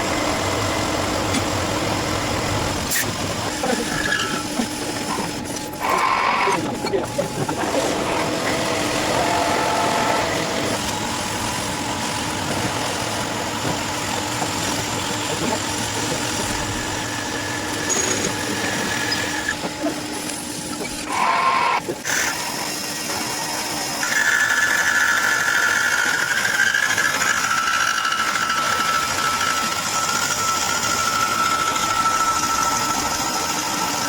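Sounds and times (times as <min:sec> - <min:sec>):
machine tool humming: 0:00.0 - 0:34.0.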